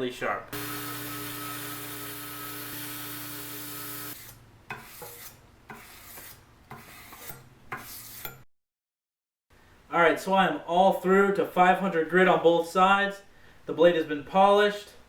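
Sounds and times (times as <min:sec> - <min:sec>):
power tool humming: 0:00.5 - 0:04.2
sandpaper rasping on knife blade: 0:04.1 - 0:08.4.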